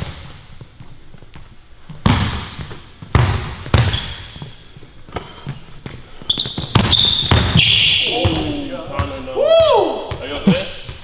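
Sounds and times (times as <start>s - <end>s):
basketball bouncing: 0.0s - 11.0s
sneaker squeaks on court: 2.0s - 9.2s, 10.1s - 11.0s.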